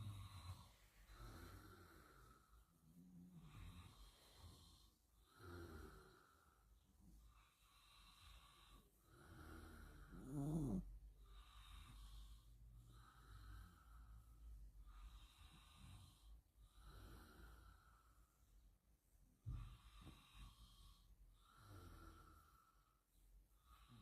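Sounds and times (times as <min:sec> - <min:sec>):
puppy snoring: 0:00.0 - 0:06.4, 0:07.4 - 0:14.0.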